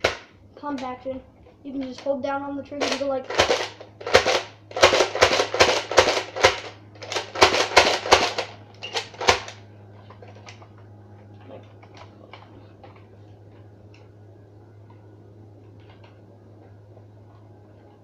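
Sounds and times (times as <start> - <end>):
toy shotgun rapid shots: 2.8 - 8.5.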